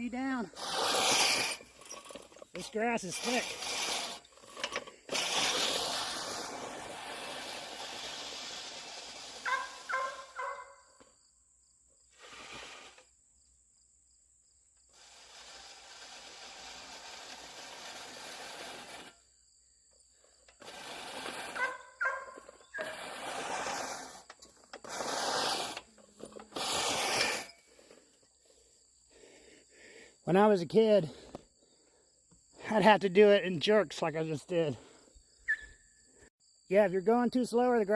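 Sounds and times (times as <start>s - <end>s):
reel mower blades whirring: 0.0s - 10.6s, 12.1s - 13.0s, 14.9s - 19.4s, 20.2s - 28.2s
high pitched squawking: 35.4s - 35.8s.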